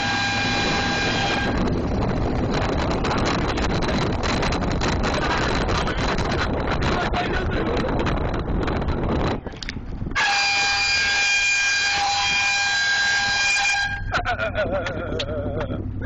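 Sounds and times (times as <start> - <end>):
air horn blast: 0.0 - 1.7, 10.2 - 14.2
wind on microphone: 0.0 - 16.0.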